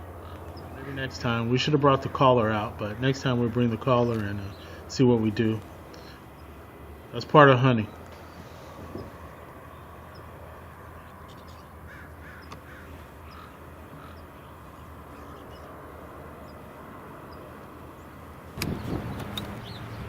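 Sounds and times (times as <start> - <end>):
distant crows cawing: 0.0 - 1.1, 1.9 - 4.9, 8.2 - 18.2.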